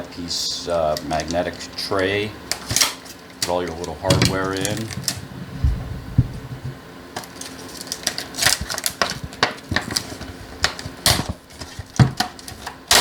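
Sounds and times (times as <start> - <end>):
crackles and sharp clicks: 2.5 - 13.0
packaging tearing: 7.2 - 13.0.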